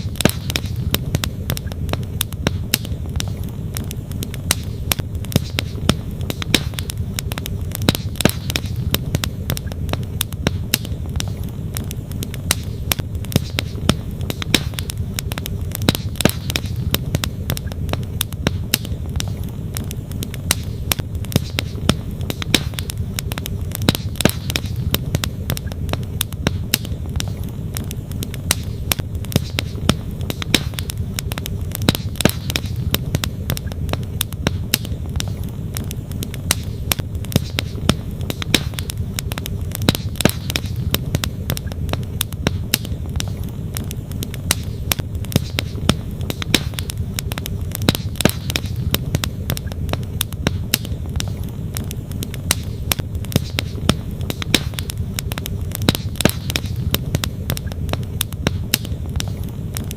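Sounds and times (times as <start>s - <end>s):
campfire crackling and popping: 0.0s - 59.9s.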